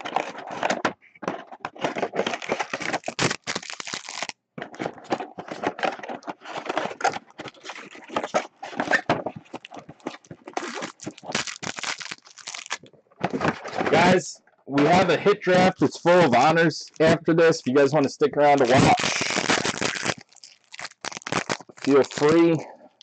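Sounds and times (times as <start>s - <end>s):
plastic wrapping crinkling and tearing: 1.7s - 12.9s, 18.5s - 22.7s.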